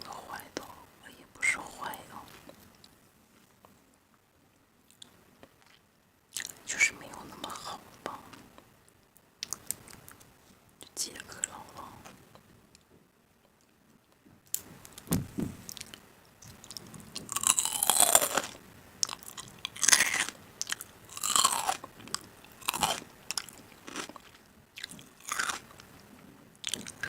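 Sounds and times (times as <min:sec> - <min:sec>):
person crunching crisp food: 0:15.7 - 0:25.9, 0:26.6 - 0:27.0.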